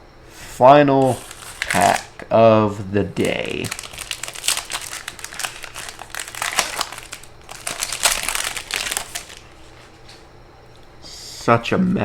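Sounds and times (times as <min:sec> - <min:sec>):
plastic wrapper crinkling: 0:01.0 - 0:02.3, 0:03.1 - 0:09.9.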